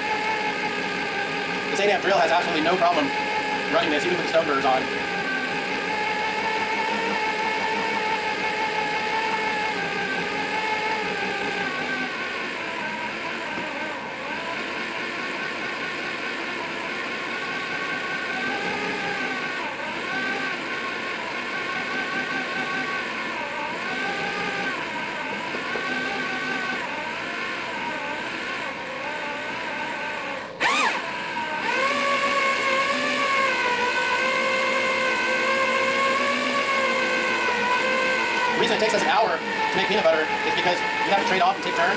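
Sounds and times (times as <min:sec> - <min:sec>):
electric drill motor whining: 0:00.0 - 0:41.9
burrs grinding peanuts: 0:31.7 - 0:41.9.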